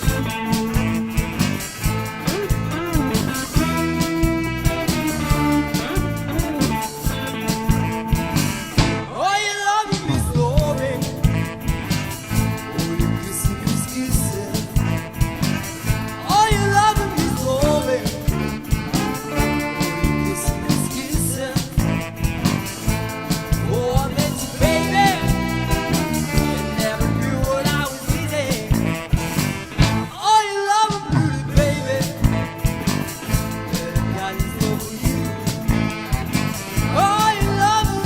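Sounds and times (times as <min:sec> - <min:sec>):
lead guitar bending pitch: 0:00.0 - 0:09.0, 0:10.7 - 0:16.4, 0:17.2 - 0:30.1
electric blues band playing: 0:00.0 - 0:38.0.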